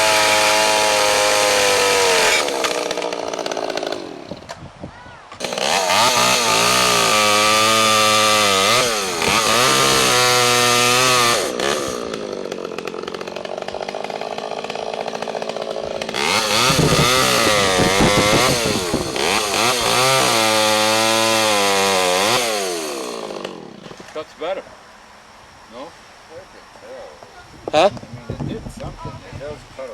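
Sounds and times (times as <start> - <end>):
chainsaw revving and cutting wood: 0.0 - 4.5, 5.3 - 24.2.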